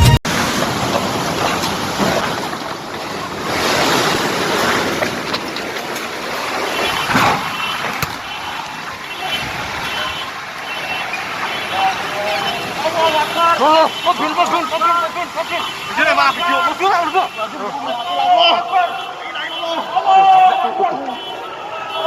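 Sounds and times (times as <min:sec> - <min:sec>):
heavy rain and hail in wind: 0:00.3 - 0:17.9.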